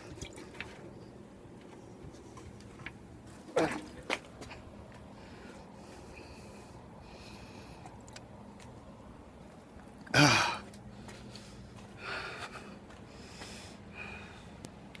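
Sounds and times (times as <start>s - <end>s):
faint breathy sounds: 5.1s - 8.0s, 10.3s - 14.6s.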